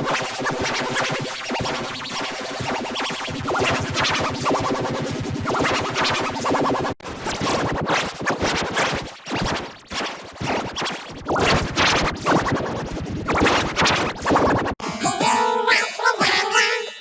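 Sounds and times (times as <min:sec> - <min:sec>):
distorted scratchy stutters: 0:10.4 - 0:16.7
pitched sound: 0:14.8 - 0:17.0.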